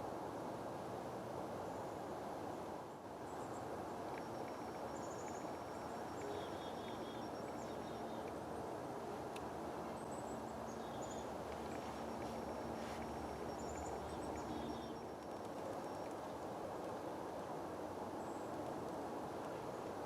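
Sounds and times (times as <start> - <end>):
outdoor background hiss: 0.0 - 20.0
small birds chirping: 4.2 - 8.5, 9.9 - 16.2.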